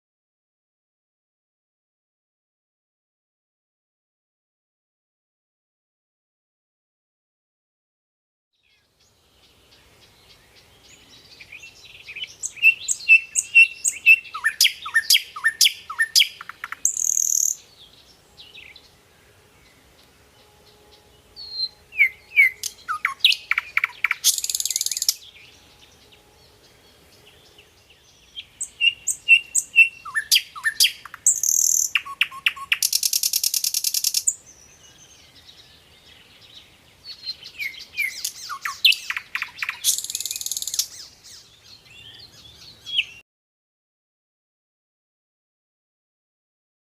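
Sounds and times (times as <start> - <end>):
songbird singing: 8.6 - 43.2.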